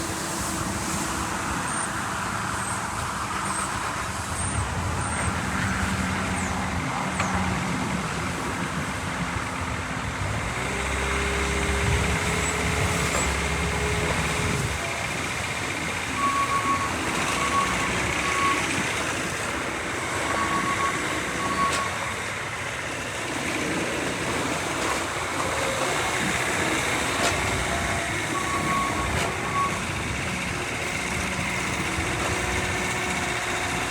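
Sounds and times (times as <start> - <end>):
diesel engine running: 0.0 - 33.9
backup alarm beeping: 14.8 - 22.1, 27.4 - 31.5.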